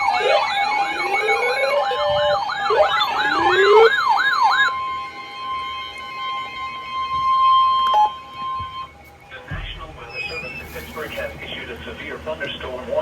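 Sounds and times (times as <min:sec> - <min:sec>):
steady alert tone: 0:00.0 - 0:04.7
electronic siren yelp: 0:00.0 - 0:11.2.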